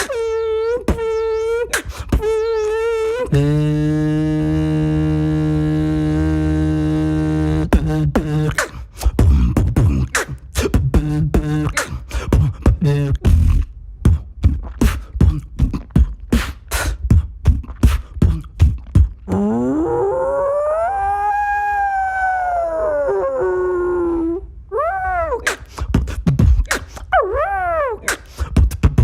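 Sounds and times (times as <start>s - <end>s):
held hum: 0.0s - 16.2s
beatbox rhythm: 0.0s - 19.5s, 25.4s - 29.0s.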